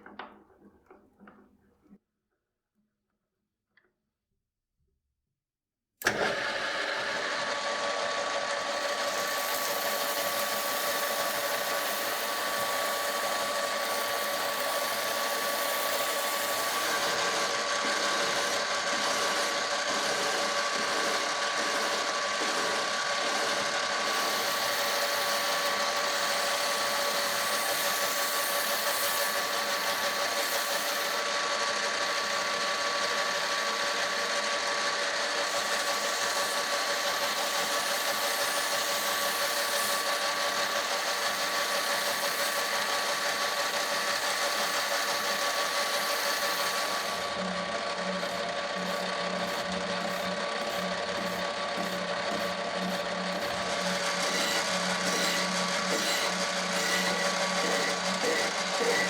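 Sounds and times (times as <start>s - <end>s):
power tool motor whine: 6.0s - 59.0s
grinding hiss: 8.8s - 31.2s, 35.4s - 47.2s, 48.2s - 59.0s.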